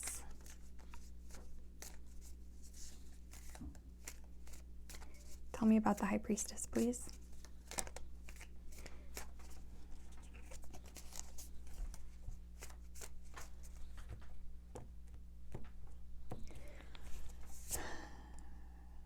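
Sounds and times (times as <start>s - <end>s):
cards being shuffled: 0.1s - 14.8s.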